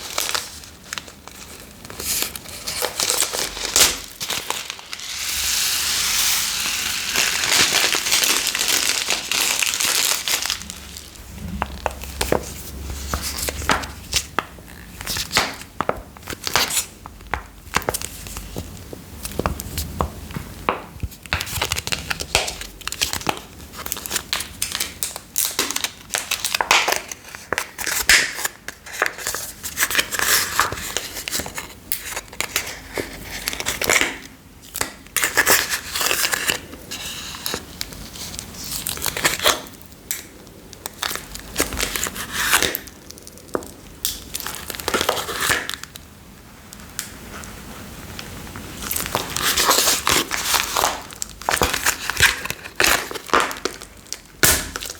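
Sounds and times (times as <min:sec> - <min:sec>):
slime crackling and crunching: 0:02.5 - 0:14.3, 0:48.7 - 0:54.9.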